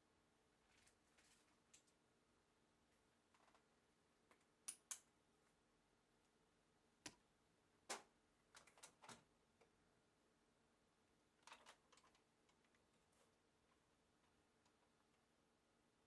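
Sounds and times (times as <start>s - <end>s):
small tools clicking and tapping: 4.3s - 5.1s.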